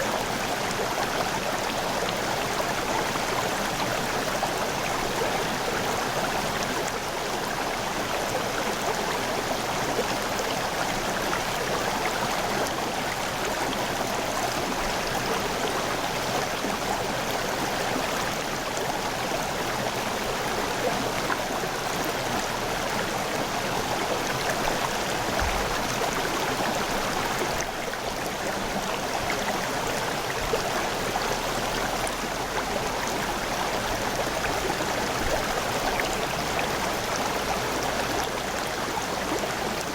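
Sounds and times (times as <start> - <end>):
river water rushing over rocks: 0.0 - 39.9
low thump: 25.4 - 25.8.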